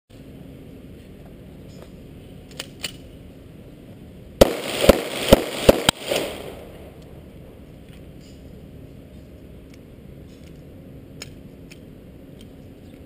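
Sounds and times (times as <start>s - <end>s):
pistol shots: 4.4s - 7.0s.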